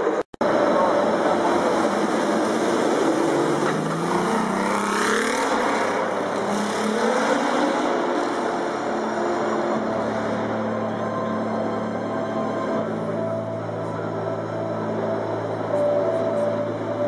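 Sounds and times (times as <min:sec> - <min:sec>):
racing car engine accelerating: 0:00.4 - 0:10.9.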